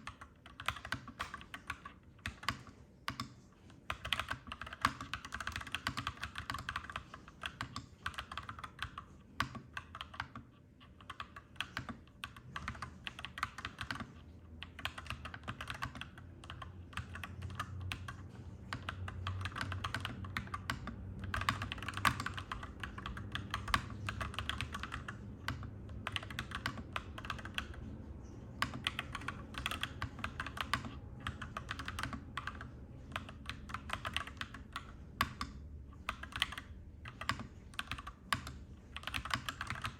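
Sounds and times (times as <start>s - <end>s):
typing on mechanical keyboard: 0.0s - 39.9s.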